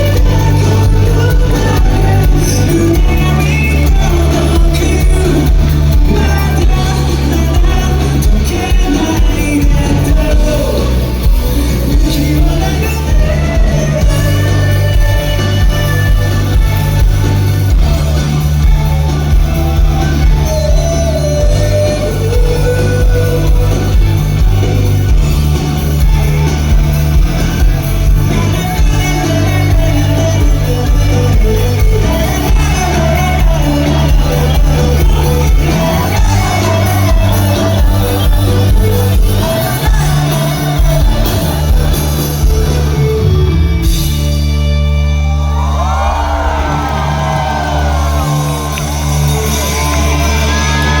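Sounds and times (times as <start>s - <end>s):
guitar: 0.0s - 51.0s
heavy bass: 0.0s - 51.0s
live rock band: 0.0s - 51.0s
voices shouting and whooping: 45.1s - 51.0s.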